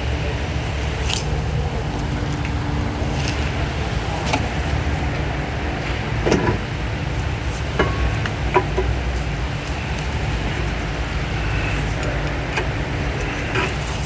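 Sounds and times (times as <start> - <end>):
low workshop rumble: 0.0 - 14.0.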